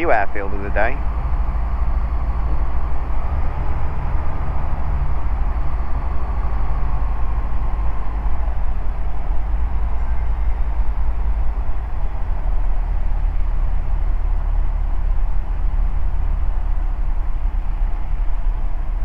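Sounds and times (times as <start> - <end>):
microlight engine running: 0.0 - 19.0.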